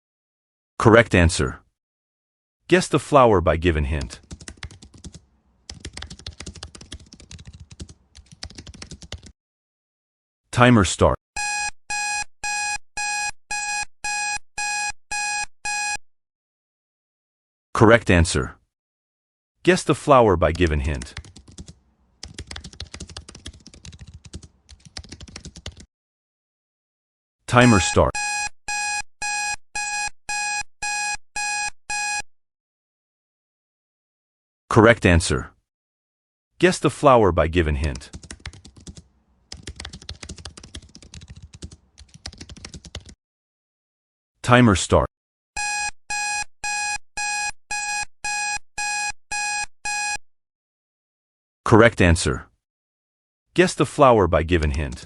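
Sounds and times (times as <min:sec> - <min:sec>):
electronic countdown beeps: 0:11.4 - 0:16.0, 0:27.6 - 0:32.3, 0:45.6 - 0:50.2.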